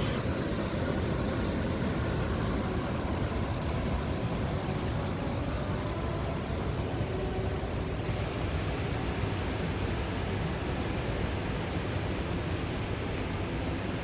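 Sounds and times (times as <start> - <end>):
indoor ventilation rushing: 0.0 - 14.0.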